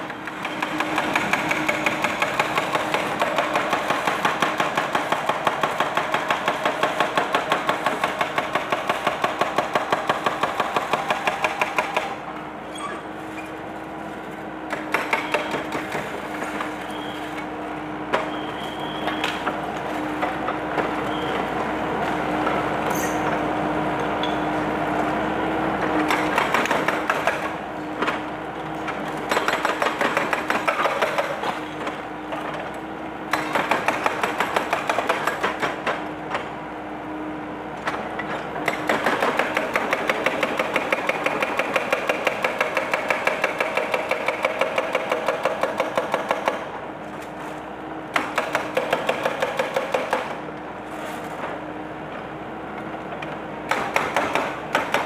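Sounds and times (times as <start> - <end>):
hydraulic breaker hammering: 14.7 - 16.6, 28.9 - 31.6, 33.3 - 36.1, 48.1 - 50.4, 53.2 - 55.0.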